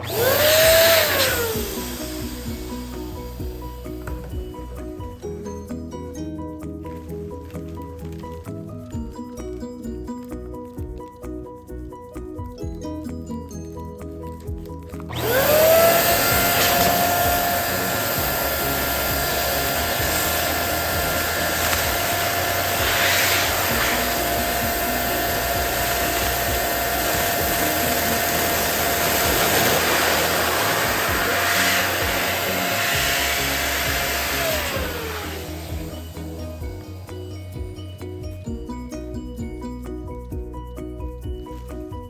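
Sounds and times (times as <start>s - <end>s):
electric balloon pump whine: 0.0s - 5.9s, 14.4s - 39.6s.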